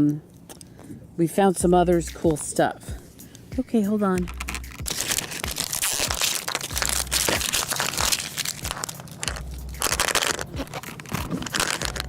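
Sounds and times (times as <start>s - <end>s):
plastic wrapping crackling: 4.2s - 12.0s.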